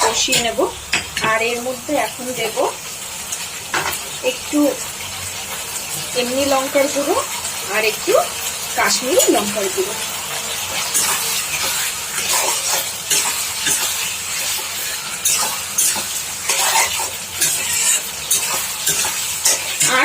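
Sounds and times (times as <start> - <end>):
onions sizzling in a pan: 0.0 - 20.0
spatula scraping a pan: 10.3 - 20.0.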